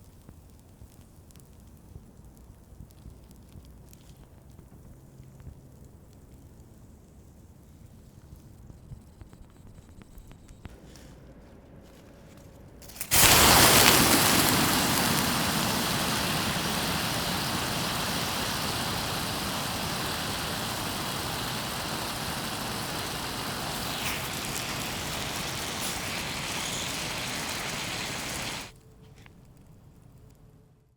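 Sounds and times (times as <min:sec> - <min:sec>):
battery venting with harsh hiss: 0:12.8 - 0:28.7.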